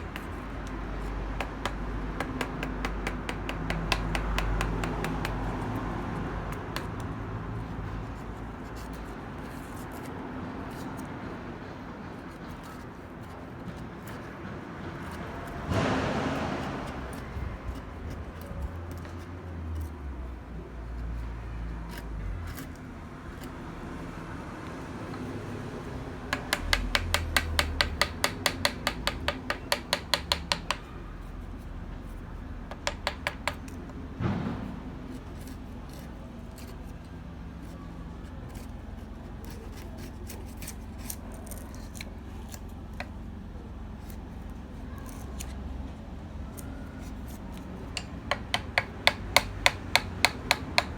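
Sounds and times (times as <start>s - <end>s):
wooden knock: 26.3s - 30.9s, 32.7s - 33.6s, 48.0s - 50.9s.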